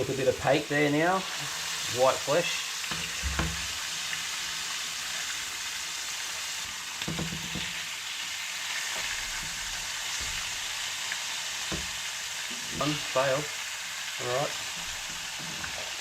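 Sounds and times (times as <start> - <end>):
fish sizzling in hot oil: 0.0 - 16.0.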